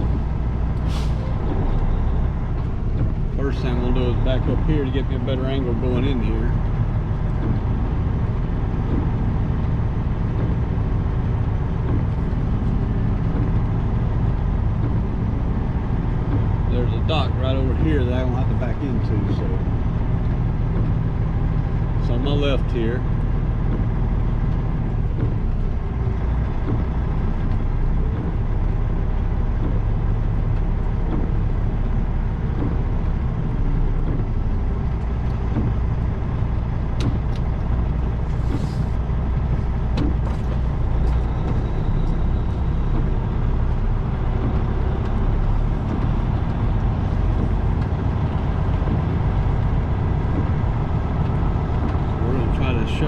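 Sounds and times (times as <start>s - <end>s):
diesel truck engine running: 0.0s - 53.0s
air brake hiss: 0.8s - 1.4s.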